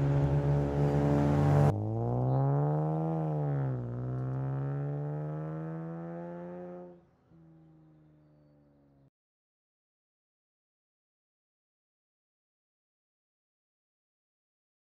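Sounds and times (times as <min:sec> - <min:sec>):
car engine revving: 0:00.0 - 0:08.0.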